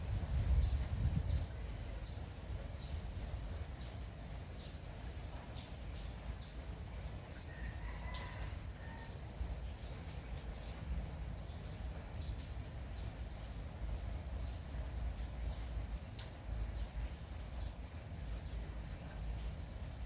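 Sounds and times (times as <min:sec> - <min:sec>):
steady light rain: 0:00.0 - 0:20.0
small birds chirping: 0:00.2 - 0:08.0, 0:09.4 - 0:20.0
rooster crowing faintly: 0:07.4 - 0:09.4.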